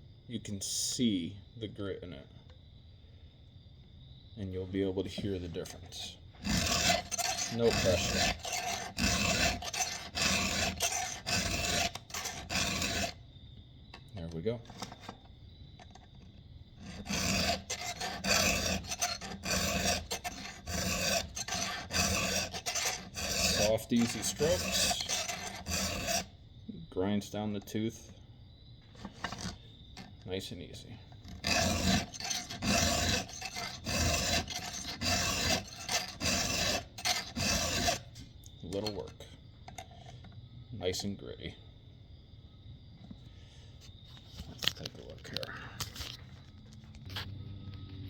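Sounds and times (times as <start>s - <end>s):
file rasping on chainsaw tooth: 4.7s - 13.2s, 14.3s - 15.2s, 16.8s - 26.4s, 29.0s - 30.2s, 31.2s - 40.1s.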